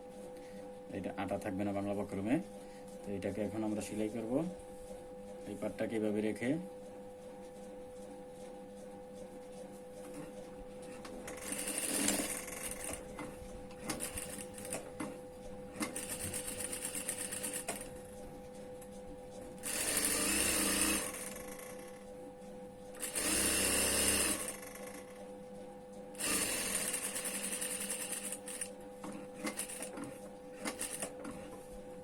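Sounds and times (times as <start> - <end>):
sewing machine stitching: 11.2 - 13.2, 13.8 - 15.1, 15.8 - 17.9, 19.6 - 22.0, 23.0 - 25.1, 26.2 - 31.4.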